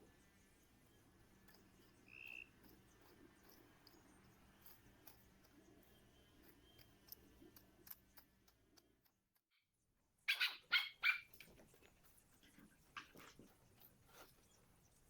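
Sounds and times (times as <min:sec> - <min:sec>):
faint ticks: 0:00.2 - 0:09.2
dog barking: 0:10.3 - 0:11.4.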